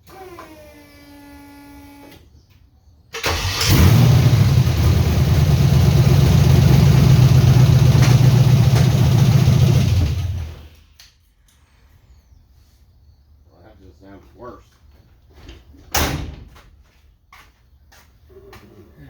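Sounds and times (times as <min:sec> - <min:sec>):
engine cranking and running rough: 0:03.2 - 0:10.8
engine pops: 0:03.4 - 0:10.6.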